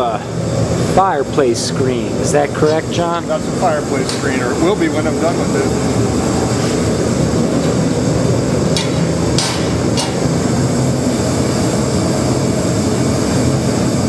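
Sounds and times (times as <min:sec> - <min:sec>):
sharp metal strikes: 0:08.7 - 0:10.2.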